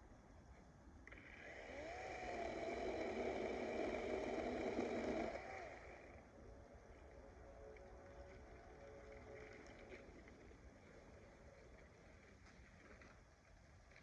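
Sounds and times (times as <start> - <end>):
battery chainsaw running: 1.1 - 6.2.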